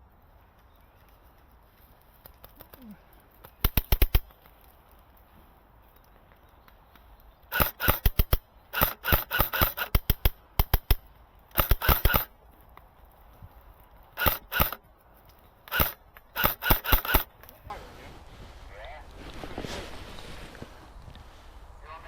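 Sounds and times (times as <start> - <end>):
airsoft rifle bursts: 3.4 - 4.3, 7.5 - 12.3, 14.2 - 14.8, 15.6 - 17.5.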